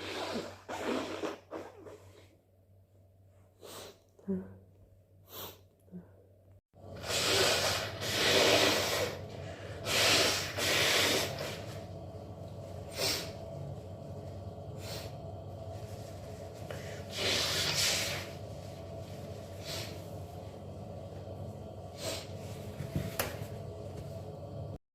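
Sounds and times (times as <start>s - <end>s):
person blowing nose: 0.0s - 2.1s, 7.0s - 9.2s, 9.8s - 11.7s, 17.0s - 18.4s.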